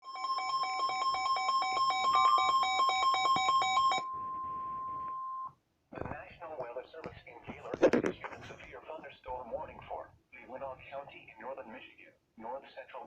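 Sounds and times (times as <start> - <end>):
harsh electronic beeping alarm: 0.0 - 5.5
steady warning alarm tone: 0.0 - 5.5.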